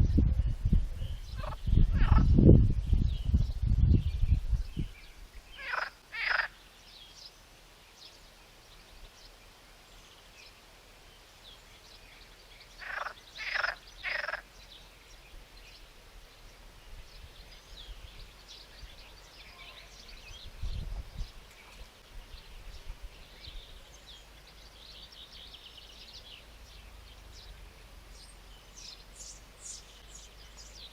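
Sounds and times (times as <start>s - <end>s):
harsh animal calls: 12.8s - 14.4s
faint high bird chirps: 16.5s - 30.9s.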